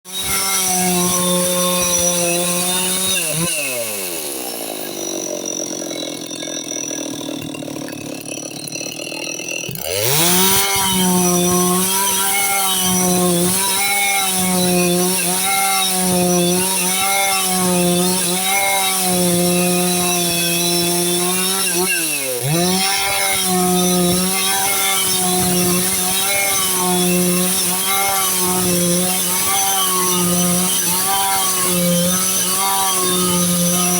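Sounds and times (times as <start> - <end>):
chainsaw cutting log: 0.1 - 33.9.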